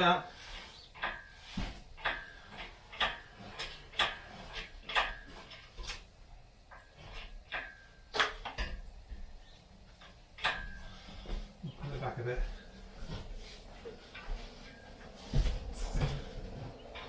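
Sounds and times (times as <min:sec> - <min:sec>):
sharp metallic clanks: 0:00.5 - 0:06.0, 0:10.0 - 0:11.4.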